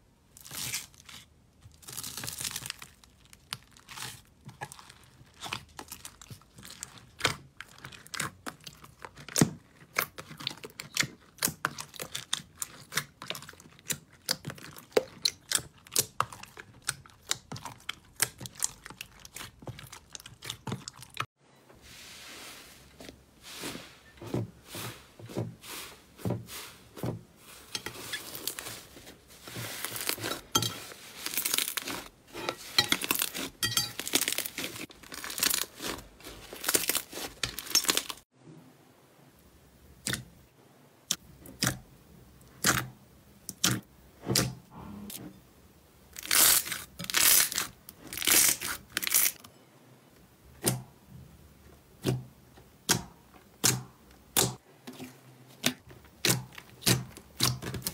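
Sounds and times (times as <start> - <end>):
slime popping and crackling: 0.4 - 21.2, 29.6 - 32.1, 32.7 - 38.2, 56.1 - 57.9.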